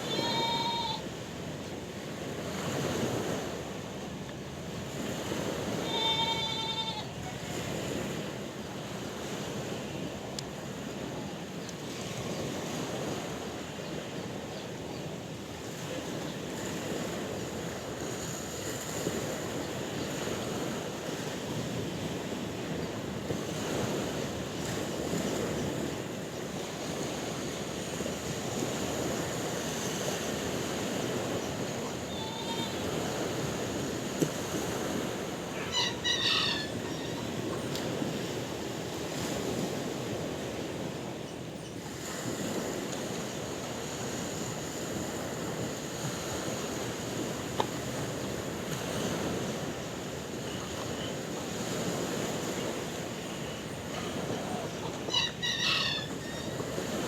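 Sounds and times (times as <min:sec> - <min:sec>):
sea waves on shore: 0:00.0 - 0:57.0
pitched animal call: 0:31.8 - 0:33.1, 0:35.5 - 0:37.4, 0:53.9 - 0:56.6.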